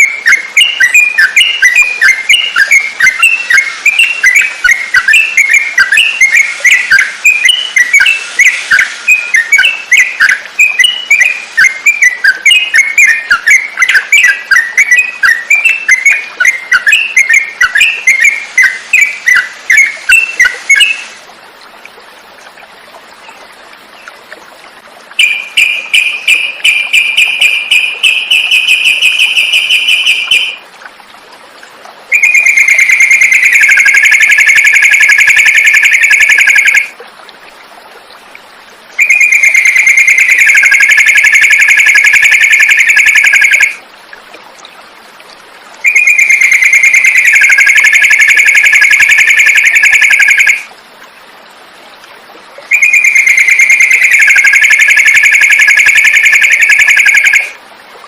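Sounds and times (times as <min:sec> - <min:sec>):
bird song high rattling trill: 0:00.0 - 0:21.1, 0:25.2 - 0:30.6, 0:32.1 - 0:36.8, 0:39.0 - 0:43.8, 0:45.8 - 0:50.6, 0:52.7 - 0:57.6.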